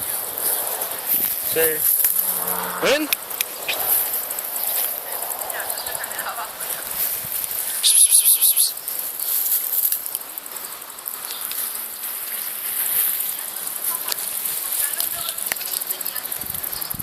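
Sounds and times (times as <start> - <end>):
insects chirring: 0.0 - 12.5.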